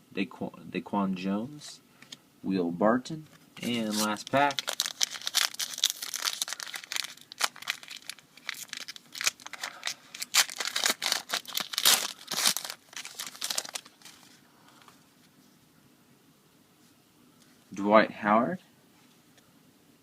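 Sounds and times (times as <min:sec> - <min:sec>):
wrapper tearing and crinkling: 0:03.6 - 0:14.4.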